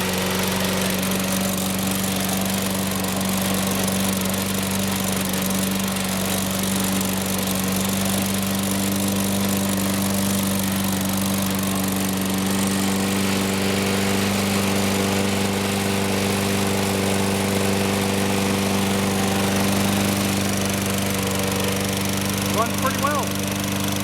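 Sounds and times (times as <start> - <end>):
lawn mower engine running: 0.0 - 24.0.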